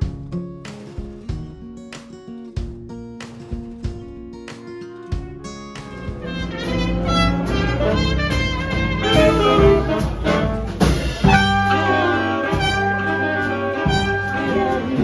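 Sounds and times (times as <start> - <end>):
upbeat jazz music with brass: 4.7 - 15.0.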